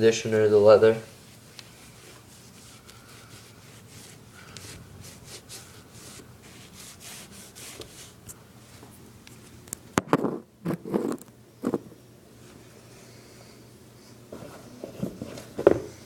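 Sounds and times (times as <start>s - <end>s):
cloth rubbing leather shoe: 1.1s - 8.9s.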